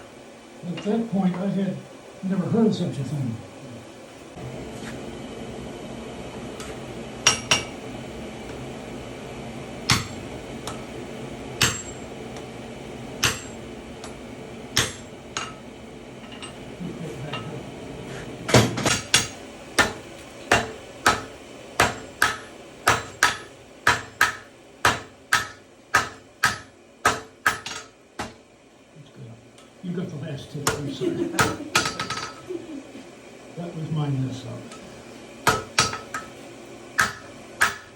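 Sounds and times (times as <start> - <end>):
hammer on steel anvil ringing: 11.6 - 12.0, 13.2 - 13.6, 37.0 - 37.9.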